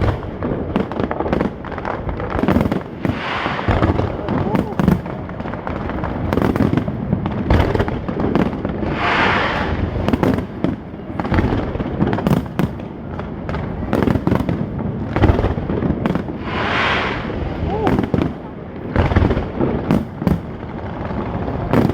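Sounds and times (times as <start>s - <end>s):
fireworks bangs and pops: 0.0s - 21.9s
fireworks hissing crackle: 2.5s - 6.1s, 8.6s - 10.9s, 16.1s - 18.3s.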